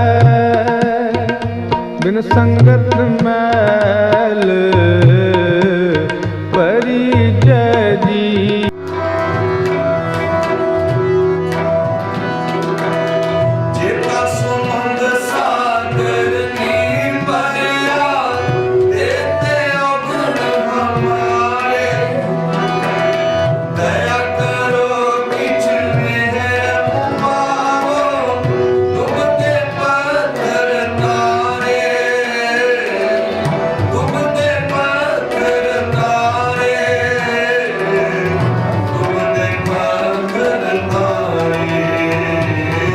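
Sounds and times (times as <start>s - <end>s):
harmonium sustained notes: 0.0s - 42.9s
tabla rhythm: 0.0s - 42.9s
person singing: 12.0s - 42.9s.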